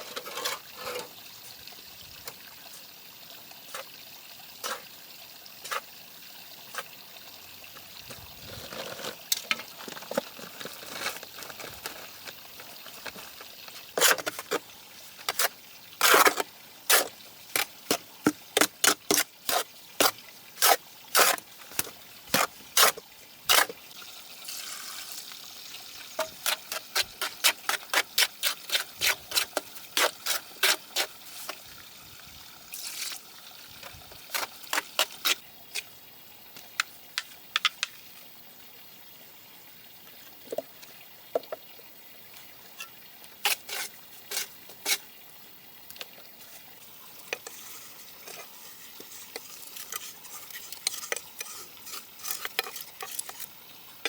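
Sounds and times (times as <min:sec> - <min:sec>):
sharp scraping on something wet: 0:13.9 - 0:14.6, 0:15.2 - 0:18.0, 0:18.6 - 0:23.8, 0:26.2 - 0:31.6, 0:34.3 - 0:35.4, 0:43.4 - 0:45.1, 0:47.4 - 0:53.5.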